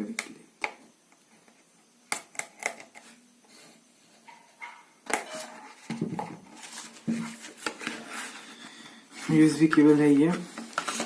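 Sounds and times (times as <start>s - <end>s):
plastic packaging rustling: 5.6s - 11.0s.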